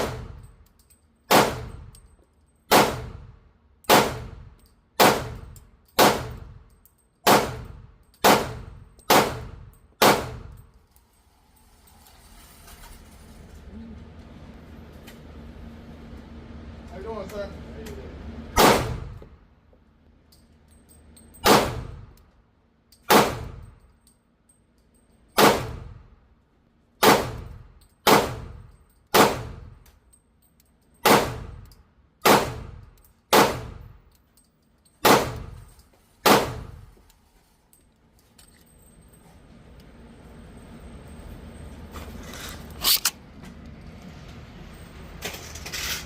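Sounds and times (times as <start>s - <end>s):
pistol shots with echoing tail: 1.3s - 1.8s, 2.7s - 3.3s, 3.9s - 4.4s, 5.0s - 5.4s, 6.0s - 6.4s, 7.3s - 10.5s, 18.6s - 19.2s, 21.4s - 22.0s, 23.1s - 23.6s, 25.4s - 26.0s, 27.0s - 27.5s, 28.1s - 29.6s, 31.0s - 31.6s, 32.2s - 33.8s, 35.0s - 35.5s, 36.2s - 36.8s.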